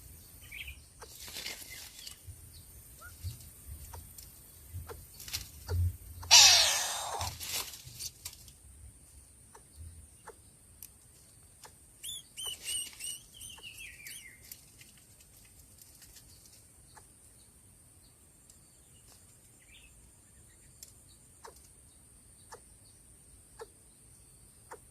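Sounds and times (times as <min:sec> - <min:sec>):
baby bird chirping: 0:05.6 - 0:07.3, 0:11.6 - 0:14.5.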